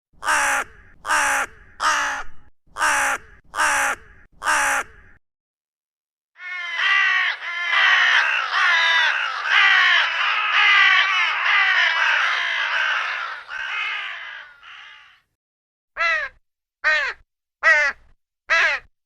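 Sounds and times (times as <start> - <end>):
crows cawing: 0.2 - 5.2, 6.4 - 15.3, 16.0 - 18.9.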